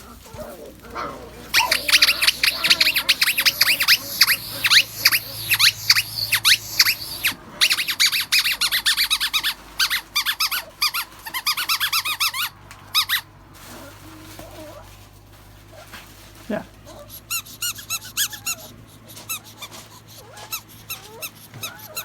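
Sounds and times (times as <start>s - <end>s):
squeaky dog toy squeaking: 1.5s - 13.3s, 17.0s - 22.0s.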